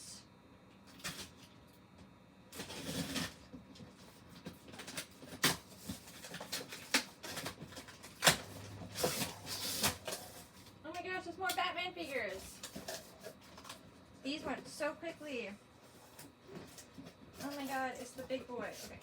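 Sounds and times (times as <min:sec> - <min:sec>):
cardboard rustling: 0:02.6 - 0:10.8.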